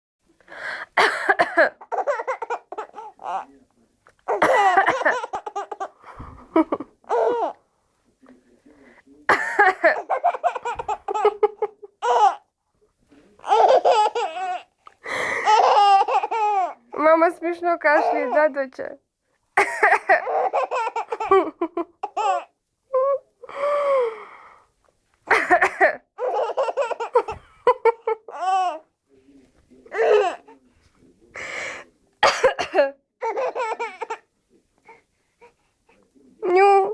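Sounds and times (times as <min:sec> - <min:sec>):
woman coughing: 0:01.0 - 0:01.8, 0:04.3 - 0:05.3, 0:09.3 - 0:10.1, 0:25.3 - 0:26.0, 0:32.2 - 0:33.0
baby coughing: 0:01.0 - 0:03.4, 0:04.3 - 0:06.0, 0:07.1 - 0:07.6, 0:09.3 - 0:11.4, 0:12.0 - 0:12.4, 0:13.4 - 0:14.7, 0:15.4 - 0:16.8, 0:18.0 - 0:18.4, 0:25.3 - 0:27.4, 0:29.9 - 0:30.6, 0:32.2 - 0:34.2
baby laughing: 0:01.8 - 0:03.5, 0:04.3 - 0:07.6, 0:09.5 - 0:12.4, 0:13.4 - 0:16.8, 0:18.0 - 0:18.4, 0:19.6 - 0:22.5, 0:26.2 - 0:28.8, 0:33.2 - 0:34.2
baby squealing laughter: 0:10.0 - 0:12.4, 0:13.4 - 0:14.7, 0:15.4 - 0:16.8, 0:20.2 - 0:21.4, 0:22.0 - 0:22.5.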